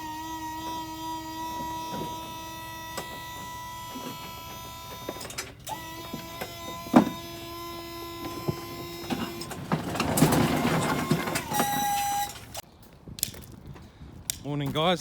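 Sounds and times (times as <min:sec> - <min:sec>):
hydraulic pump whining: 0:00.0 - 0:12.6
broken concrete sliding off: 0:09.2 - 0:12.0.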